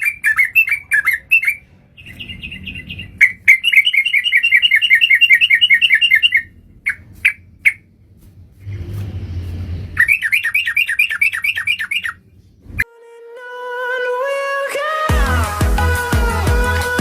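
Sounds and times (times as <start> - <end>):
bird chirping down-slurred notes: 0.0 - 8.0, 8.6 - 13.1.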